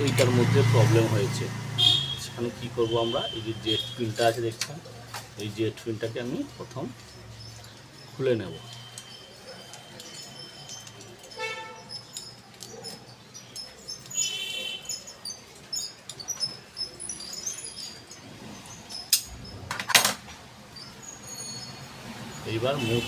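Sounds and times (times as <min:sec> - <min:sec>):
spanner clicking and scraping metal: 0:06.9 - 0:14.4.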